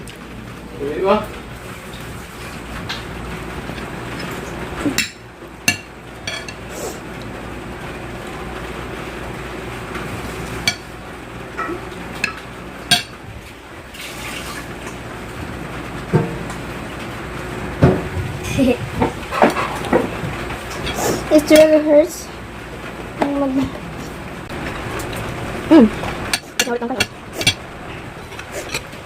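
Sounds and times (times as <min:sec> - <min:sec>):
steady background hum: 0:00.0 - 0:29.0
broth liquid sounds: 0:13.7 - 0:15.0.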